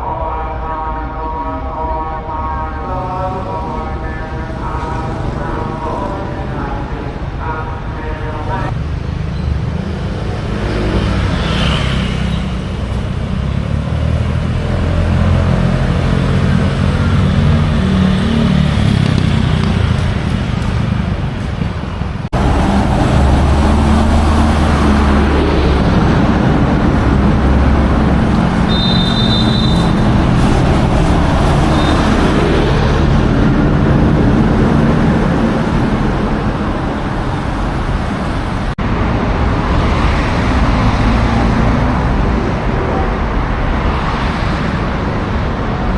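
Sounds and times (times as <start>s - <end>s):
road traffic rumble: 0.0s - 45.9s
brief high beep: 28.7s - 29.8s.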